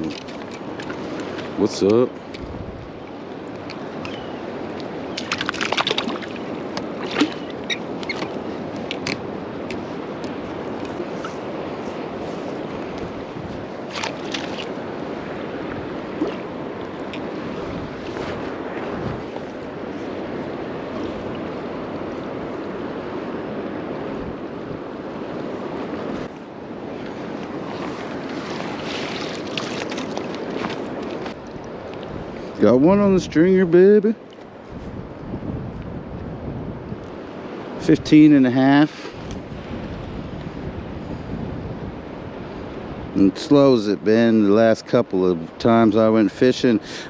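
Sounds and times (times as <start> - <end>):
water splashing and sloshing: 0.0 - 32.6
surf: 0.0 - 47.0
wind: 0.0 - 47.0.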